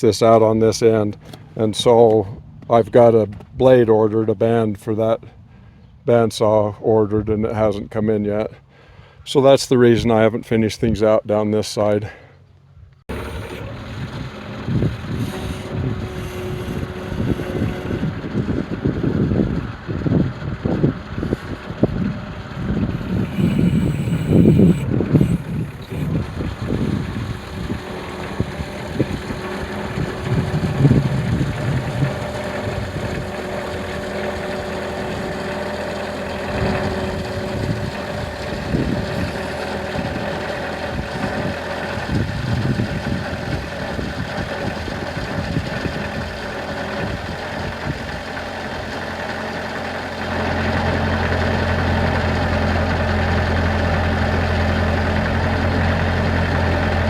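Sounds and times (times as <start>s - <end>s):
engine running: 0.0s - 5.9s, 13.0s - 57.0s
deep hum: 13.1s - 57.0s.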